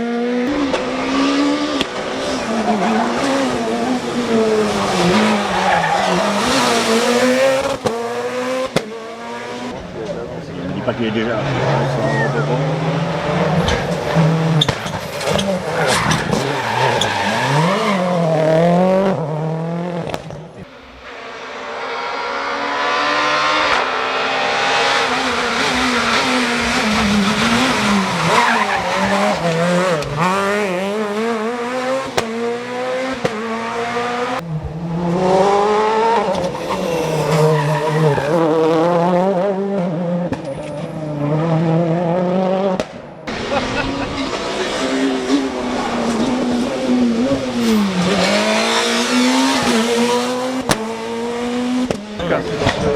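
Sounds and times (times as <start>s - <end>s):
rally car engines revving: 0.0s - 52.9s
tyre squeal: 14.5s - 18.1s, 36.4s - 38.5s.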